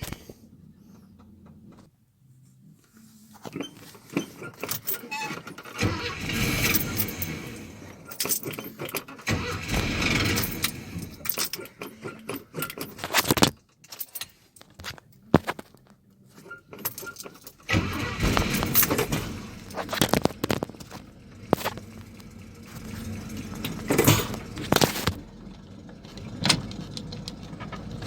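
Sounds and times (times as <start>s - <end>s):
truck engine starting and running: 3.5s - 13.3s, 16.5s - 28.0s
keys jangling: 4.4s - 5.6s, 6.6s - 7.4s, 8.1s - 9.1s, 10.2s - 14.8s, 16.7s - 20.4s, 23.7s - 25.0s.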